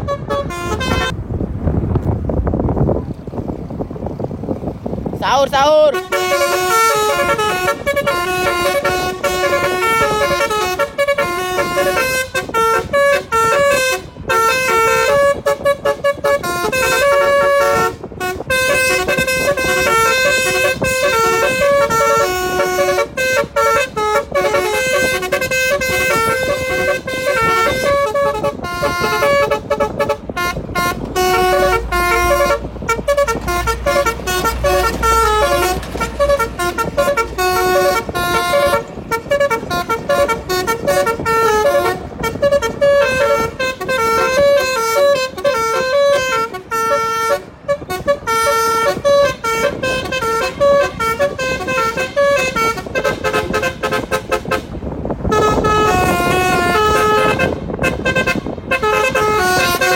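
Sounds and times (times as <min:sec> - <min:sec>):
multi-tone car horn melody: 0:00.0 - 0:01.2, 0:05.7 - 0:59.9
low rumble: 0:00.0 - 0:05.2.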